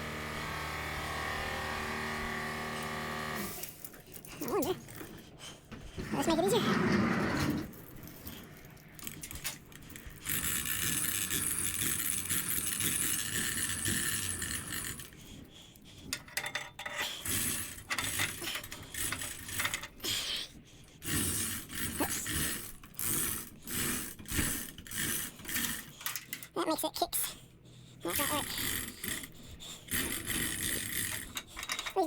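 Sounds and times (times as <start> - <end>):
metal tools clinking and rattling: 7.3 - 13.4, 16.0 - 20.2, 24.8 - 26.6, 30.1 - 32.0.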